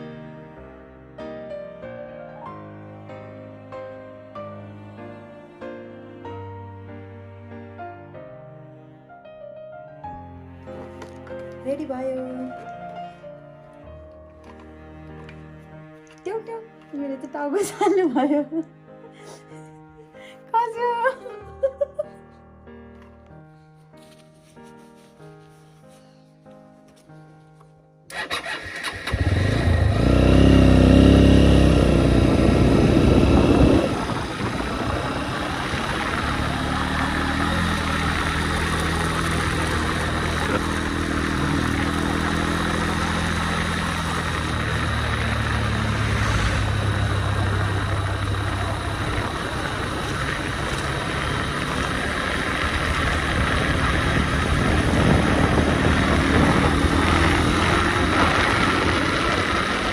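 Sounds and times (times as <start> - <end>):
motorcycle engine running: 28.1 - 59.9
wind noise: 31.0 - 42.2, 42.9 - 59.9.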